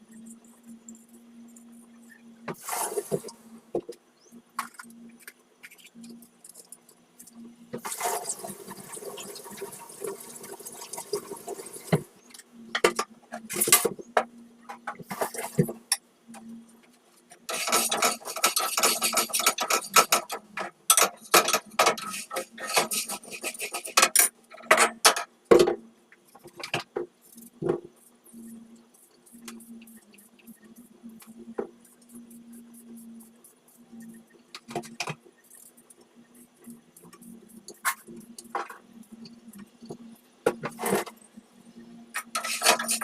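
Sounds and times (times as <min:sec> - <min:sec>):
faint steady hum: 0:00.0 - 0:43.0
running water: 0:07.8 - 0:12.2.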